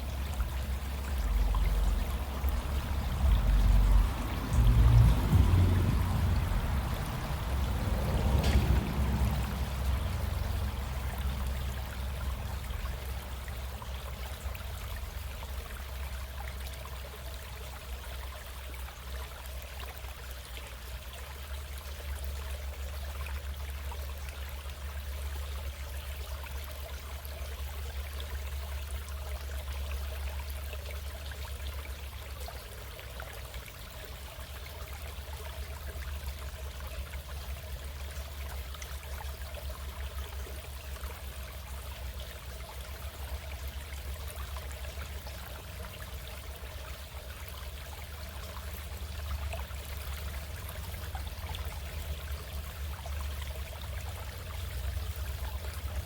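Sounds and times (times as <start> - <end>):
stream water running: 0.0 - 56.0
low rumble: 0.2 - 12.5.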